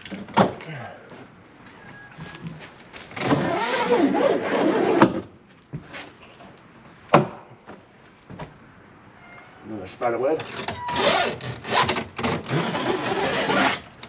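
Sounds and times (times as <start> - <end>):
wood and nails creaking and squealing: 1.6 - 5.2, 10.2 - 14.0.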